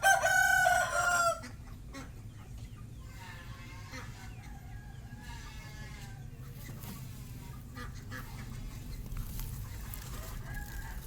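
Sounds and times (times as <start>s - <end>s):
rooster crowing: 0.0s - 1.5s, 10.1s - 11.0s.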